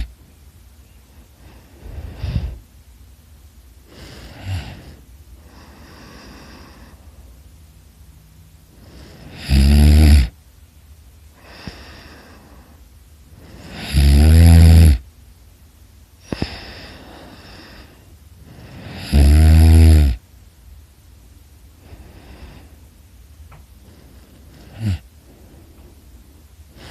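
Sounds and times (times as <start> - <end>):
soft breaths: 0.0 - 9.7, 10.3 - 14.0, 15.0 - 19.2, 20.2 - 26.9
person snoring loudly: 3.9 - 7.0, 8.8 - 10.4, 13.4 - 15.0, 18.5 - 20.2, 24.5 - 25.1.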